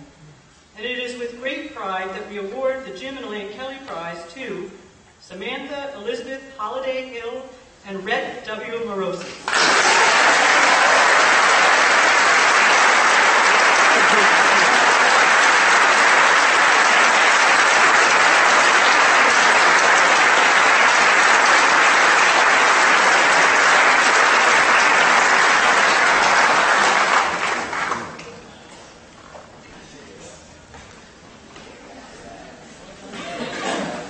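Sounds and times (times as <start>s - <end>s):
audience applauding: 9.4s - 28.3s.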